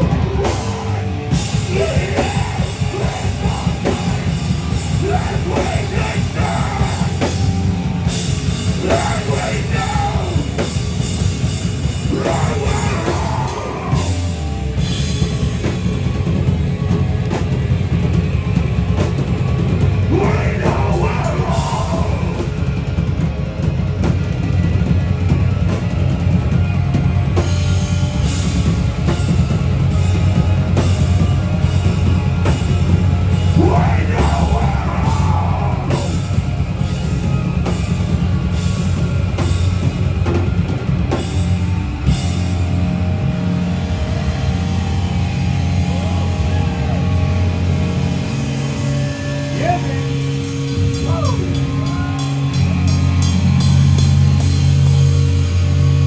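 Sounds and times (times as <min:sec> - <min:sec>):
vocals: 0:00.0 - 0:14.9, 0:19.8 - 0:23.1, 0:33.2 - 0:37.4, 0:48.5 - 0:52.6
drum kit: 0:00.0 - 0:56.0
heavy metal band playing: 0:00.0 - 0:56.0.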